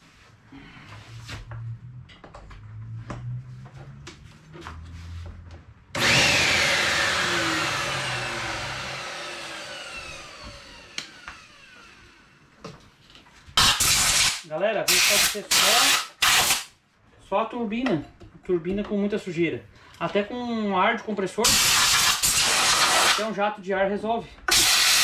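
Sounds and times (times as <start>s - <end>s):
vacuum cleaner turbine whirring: 6.0s - 12.4s, 24.5s - 25.0s.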